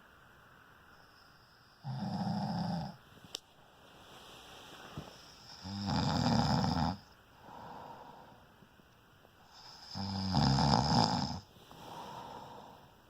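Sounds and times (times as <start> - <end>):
man snoring: 1.8 - 3.0, 5.4 - 7.8, 9.5 - 12.8.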